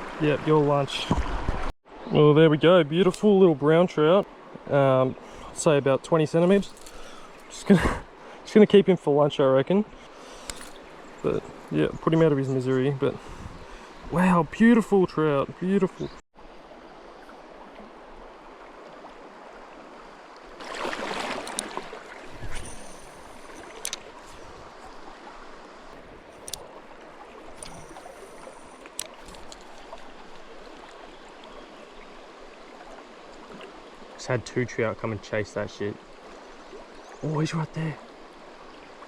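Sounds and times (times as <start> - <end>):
rush of water: 0.0 - 39.0
shallow river flowing: 0.0 - 39.0
sharp clicks: 26.4 - 26.7, 28.8 - 29.7.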